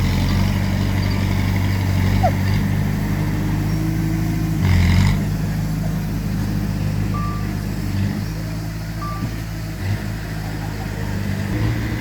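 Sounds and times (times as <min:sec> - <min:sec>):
heavy machinery engines running: 0:00.0 - 0:12.0
reversing alarm beep: 0:07.1 - 0:07.6, 0:09.0 - 0:09.4.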